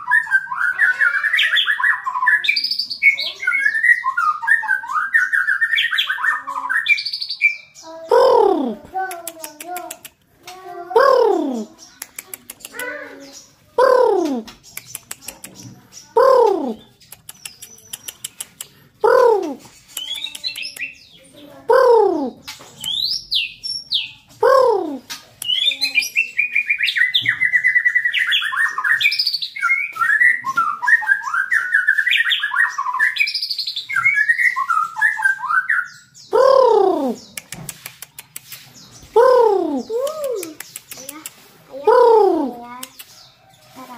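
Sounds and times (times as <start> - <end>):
bird singing high whistled song: 0.0 - 8.6, 19.1 - 37.4
low downward-sliding bird call: 36.3 - 37.3.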